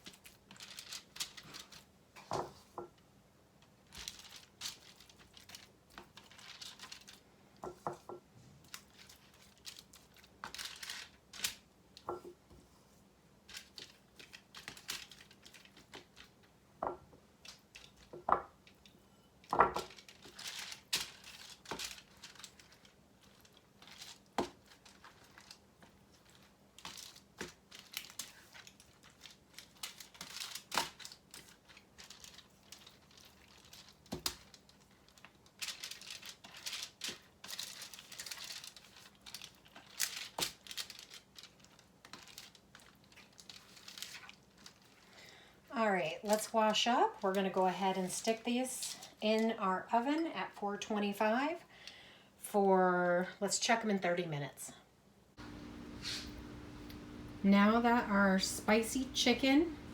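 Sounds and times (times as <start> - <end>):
aluminium foil crinkling: 0.0 - 2.0, 3.6 - 7.3, 8.6 - 12.1, 13.4 - 16.6, 17.4 - 45.5, 46.2 - 49.6, 55.4 - 59.9.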